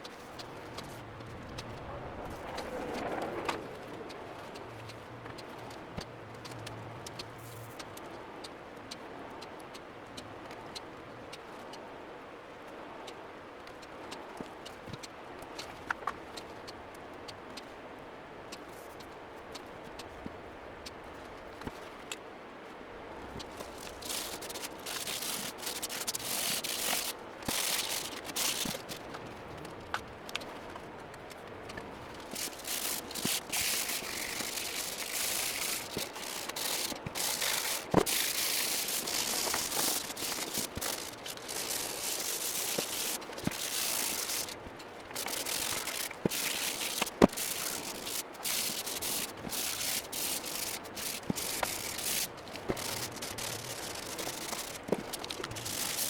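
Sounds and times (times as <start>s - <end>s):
sandpaper rubbing on metal: 23.6s - 29.0s, 32.2s - 56.0s.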